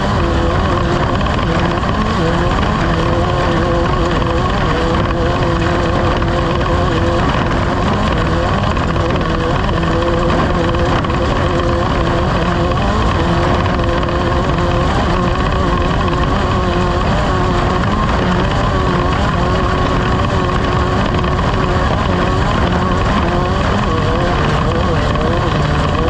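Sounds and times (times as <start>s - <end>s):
engine running at speed: 0.0s - 26.0s.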